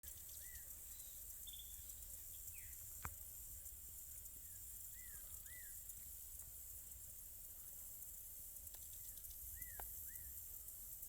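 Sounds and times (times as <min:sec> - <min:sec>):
bird chirps: 0:00.0 - 0:02.8, 0:04.4 - 0:05.9, 0:08.8 - 0:10.4
steady high hiss: 0:00.0 - 0:11.0.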